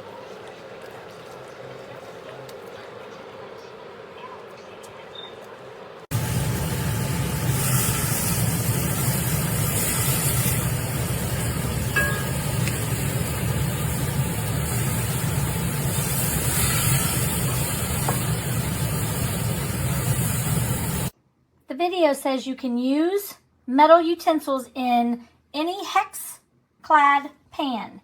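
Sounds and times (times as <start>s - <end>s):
food sizzling in a pan: 6.1s - 21.1s
low hum: 6.1s - 21.1s.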